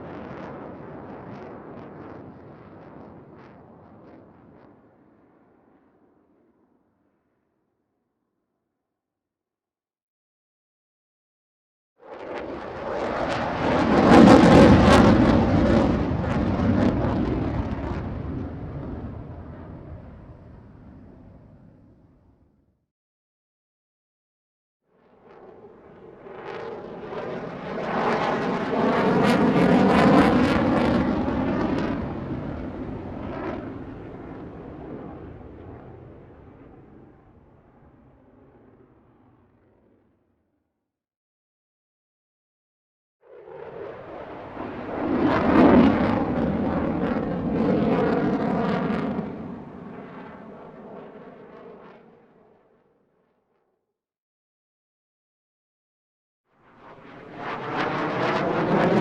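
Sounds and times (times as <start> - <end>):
airplane flying past: 12.1 - 22.0, 25.1 - 37.8, 43.3 - 52.6, 56.6 - 59.0.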